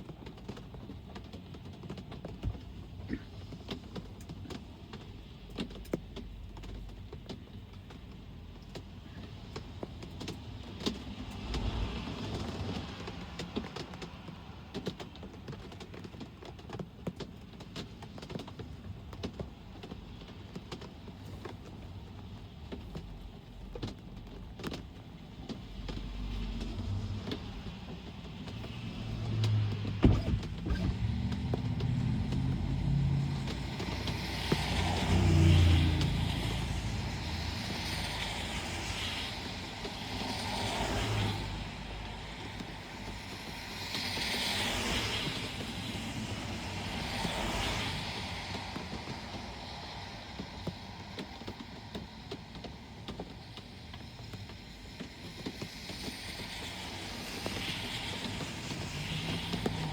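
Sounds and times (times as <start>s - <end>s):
rain pattering: 0.0s - 59.9s
tyres hissing on wet road: 8.5s - 16.5s, 19.4s - 59.9s
car engine rumble: 19.3s - 49.5s.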